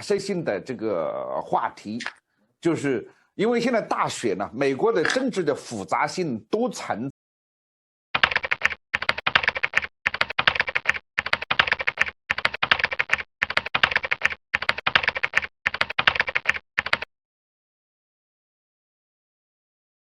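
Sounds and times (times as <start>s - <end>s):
keyboard typing: 8.2s - 17.1s.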